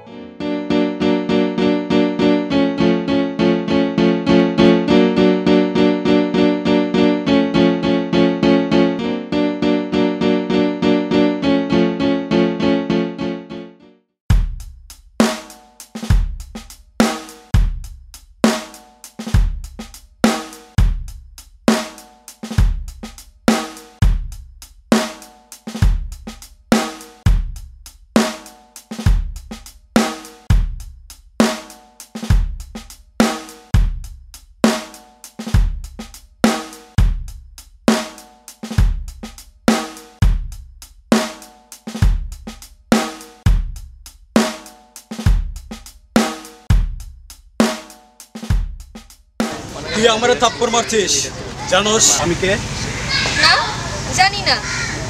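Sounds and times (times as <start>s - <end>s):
background music: 0.0s - 14.0s
heavy drum-kit beat: 14.3s - 54.9s.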